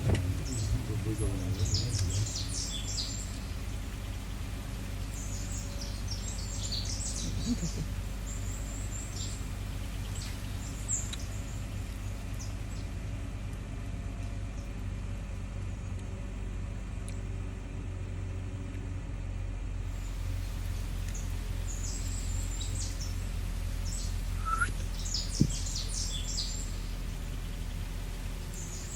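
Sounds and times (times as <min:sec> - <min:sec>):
birds chirping: 0:00.0 - 0:16.0, 0:19.9 - 0:28.9
steady low rumble: 0:00.0 - 0:28.9
sharp thump: 0:25.4 - 0:25.6.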